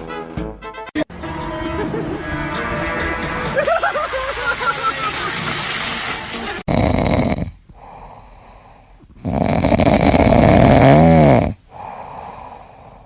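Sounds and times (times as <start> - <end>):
pet snoring: 6.7 - 8.2, 9.0 - 12.6.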